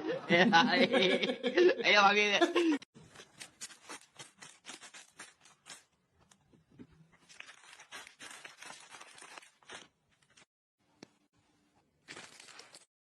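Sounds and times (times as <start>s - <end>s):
crinkling and crunching: 3.0s - 10.5s, 12.0s - 12.9s.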